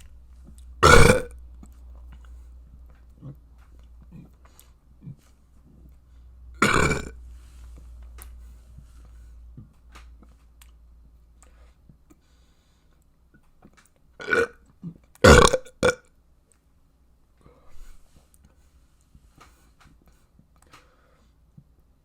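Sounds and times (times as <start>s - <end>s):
person burping: 0.8s - 1.4s, 6.6s - 7.2s, 14.2s - 16.0s.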